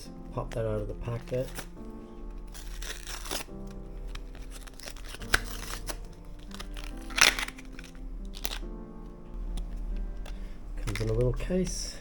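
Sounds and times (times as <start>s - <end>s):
background music: 0.0s - 12.0s
plastic packaging crinkling: 0.5s - 12.0s
plastic packaging click: 1.0s - 8.7s, 9.5s - 11.4s.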